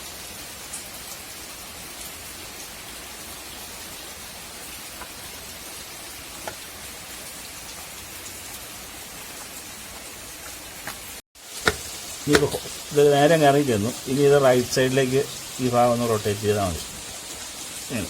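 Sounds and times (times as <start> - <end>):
steady hiss: 0.0 - 18.0
plastic cover clicks: 11.6 - 12.8.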